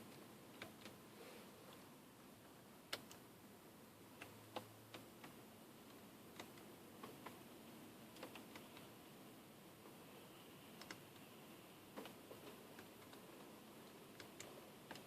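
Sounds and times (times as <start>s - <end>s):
faint small clicks: 10.8s - 11.0s.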